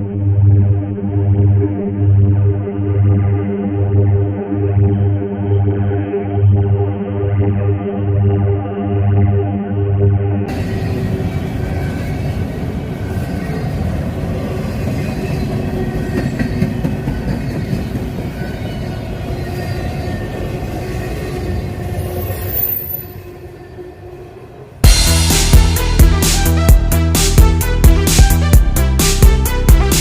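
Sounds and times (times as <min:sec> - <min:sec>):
freight train passing: 0:10.5 - 0:27.7.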